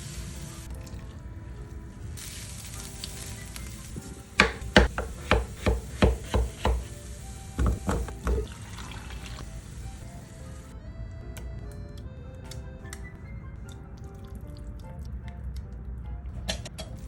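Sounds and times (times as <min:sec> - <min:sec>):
knife chopping on cutting board: 0:04.4 - 0:07.0, 0:07.6 - 0:08.5.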